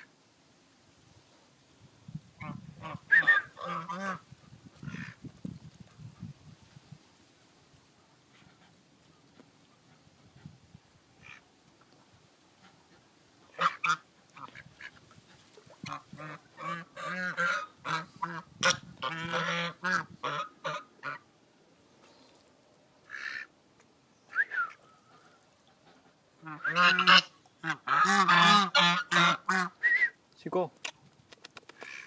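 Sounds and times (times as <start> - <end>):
geese honking: 13.5 - 15.0, 15.8 - 21.2, 26.4 - 29.8.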